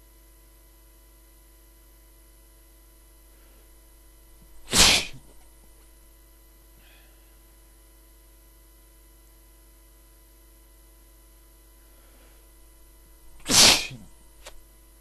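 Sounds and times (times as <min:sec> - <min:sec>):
man sneezing: 0:04.6 - 0:05.3, 0:13.3 - 0:14.1.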